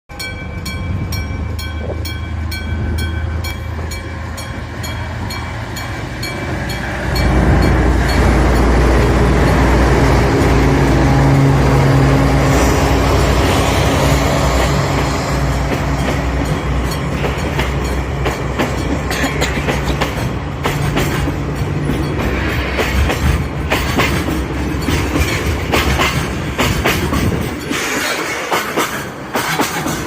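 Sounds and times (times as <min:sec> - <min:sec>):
freight train rumble: 0:00.1 - 0:30.0.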